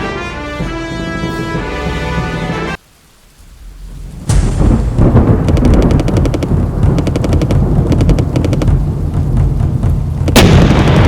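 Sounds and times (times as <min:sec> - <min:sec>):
low rumble: 0:03.2 - 0:11.0
machine-gun fire: 0:10.3 - 0:11.0.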